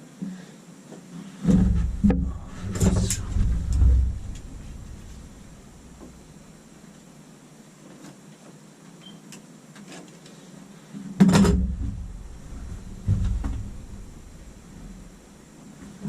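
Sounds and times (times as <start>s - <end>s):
heavy knocks with low rumble: 1.4s - 6.5s, 11.2s - 15.2s.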